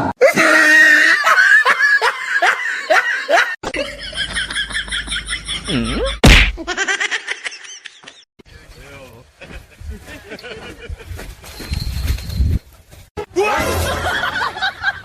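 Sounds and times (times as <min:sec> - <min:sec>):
person laughing hard: 0:00.2 - 0:08.2.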